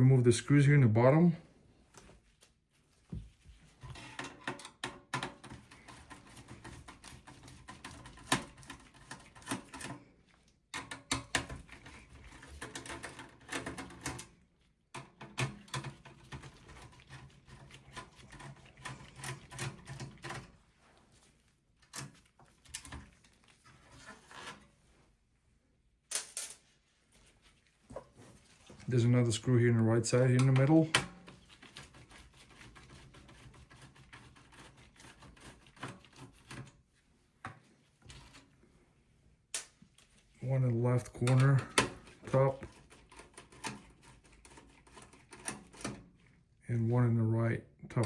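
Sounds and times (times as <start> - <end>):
screwdriver clicking and scraping metal: 3.8 - 10.0, 10.8 - 14.3, 15.0 - 20.5, 41.2 - 46.1.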